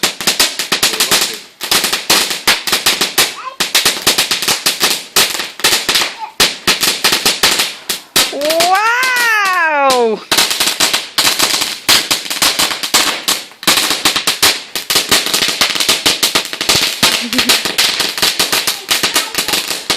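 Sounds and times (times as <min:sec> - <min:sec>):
fireworks crackling: 0:00.0 - 0:19.9.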